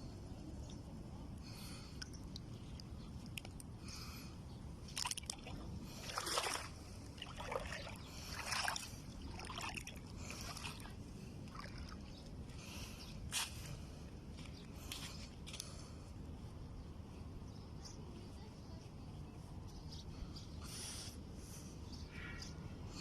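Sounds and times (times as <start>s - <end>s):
steady low rumble: 0.0s - 20.6s
small waves lapping: 4.8s - 12.9s.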